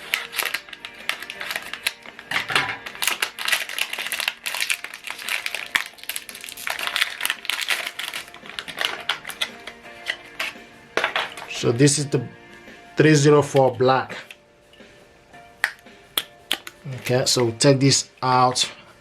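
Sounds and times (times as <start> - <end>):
packaging crinkling and rustling: 0.0 - 11.6, 16.6 - 17.4.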